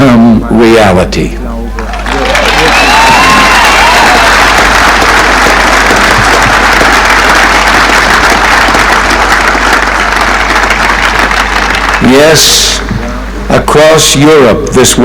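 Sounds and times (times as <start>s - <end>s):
crowd applauding: 1.8s - 13.1s.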